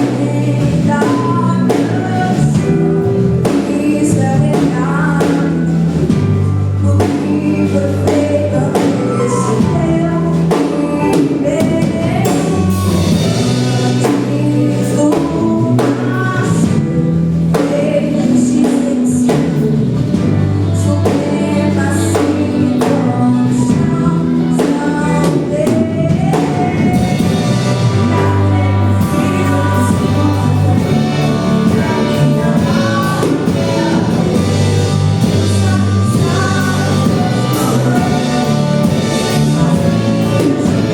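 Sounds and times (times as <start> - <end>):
band with bass and drums: 0.0 - 40.9
voices singing gospel: 0.0 - 40.9.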